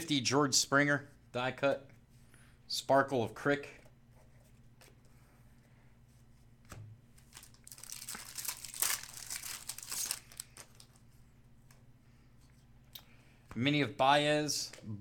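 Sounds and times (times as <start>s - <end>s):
foil wrapper tearing and crinkling: 7.3s - 11.0s.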